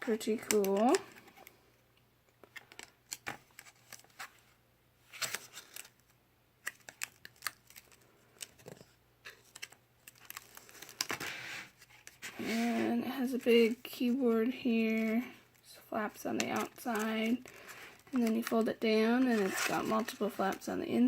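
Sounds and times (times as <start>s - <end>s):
card sliding rustles: 6.6s - 14.2s.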